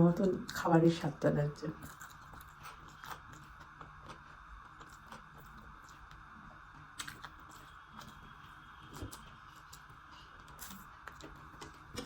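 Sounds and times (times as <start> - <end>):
faint chewing: 1.7 - 12.0.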